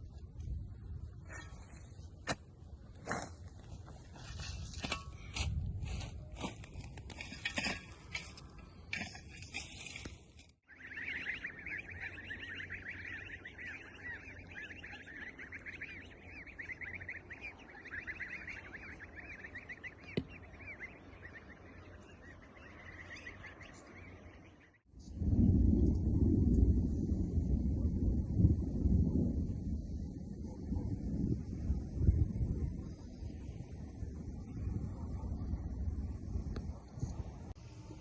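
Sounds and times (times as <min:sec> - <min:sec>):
flock of birds chattering: 0:10.7 - 0:24.8.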